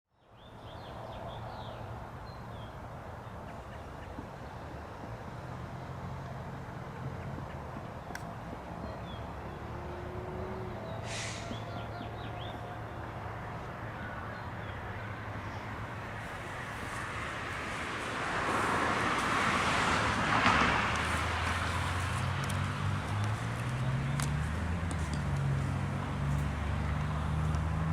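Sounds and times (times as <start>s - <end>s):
low traffic hum: 0.2s - 27.9s
vehicle passing by: 0.6s - 27.9s
bird chirp: 6.8s - 17.8s.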